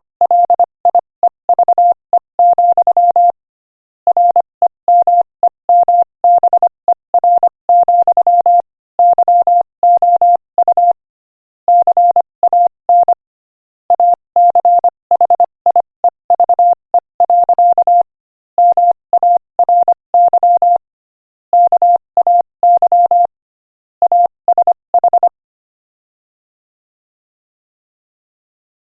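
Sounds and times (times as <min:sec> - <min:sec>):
morse code beeps: 0:00.0 - 0:01.0, 0:01.6 - 0:03.4, 0:04.1 - 0:11.0, 0:11.7 - 0:13.2, 0:13.9 - 0:20.8, 0:21.6 - 0:23.3, 0:24.0 - 0:25.3.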